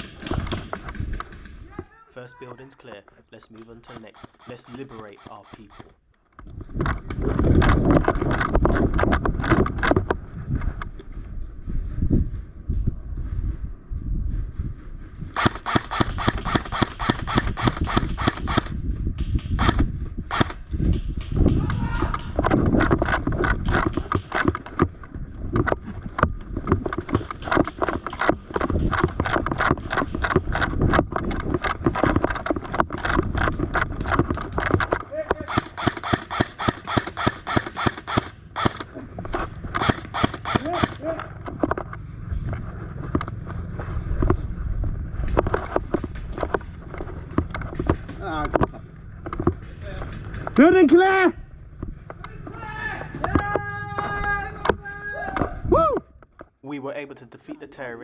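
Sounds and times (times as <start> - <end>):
wind buffeting microphone: 6.5 - 15.4, 18.7 - 24.3.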